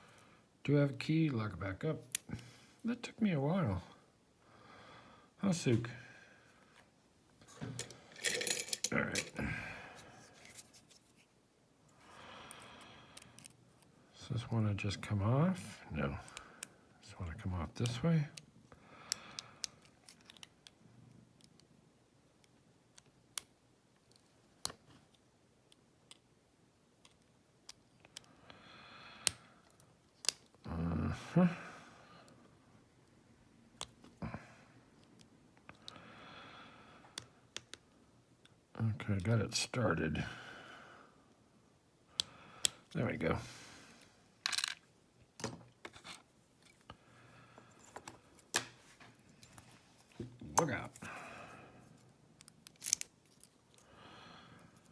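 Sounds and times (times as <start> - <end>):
small metal parts rattling: 7.8 - 9.4, 44.4 - 44.8, 52.4 - 53.8.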